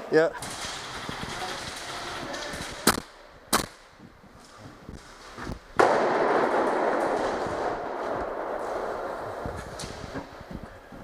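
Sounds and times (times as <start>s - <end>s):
airsoft guns firing: 0.4s - 3.9s, 5.8s - 9.0s.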